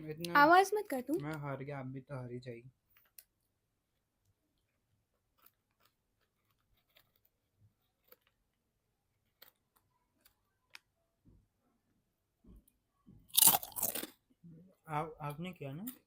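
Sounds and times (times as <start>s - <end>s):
crackers being chewed: 4.6s - 8.6s, 9.2s - 10.9s, 13.3s - 14.3s.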